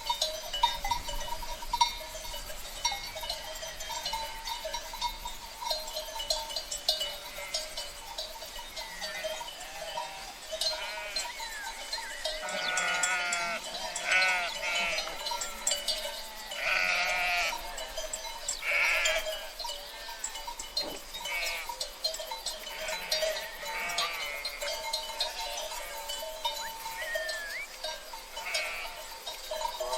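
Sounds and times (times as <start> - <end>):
bells clinking: 0.0 - 29.9
sheep bleating: 7.3 - 7.7, 8.9 - 11.6, 12.2 - 17.8, 18.6 - 20.2, 21.2 - 21.7, 22.7 - 26.1, 27.0 - 27.7, 28.4 - 29.0.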